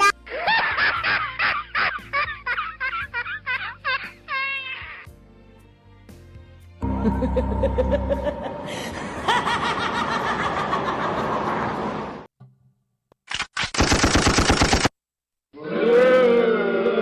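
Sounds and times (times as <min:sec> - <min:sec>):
laughter sound effect: 0:00.0 - 0:05.0, 0:06.8 - 0:12.2
machine-gun fire: 0:13.6 - 0:14.9.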